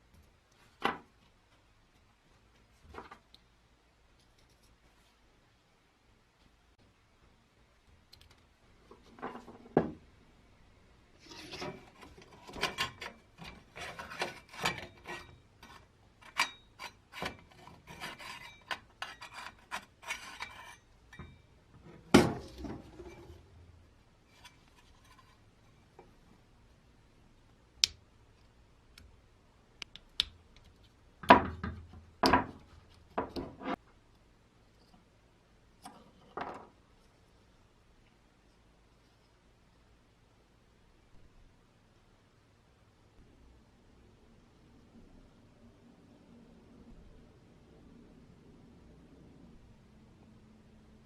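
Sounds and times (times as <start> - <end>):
rubbing and scraping strokes: 11.2 - 20.9, 24.2 - 25.6.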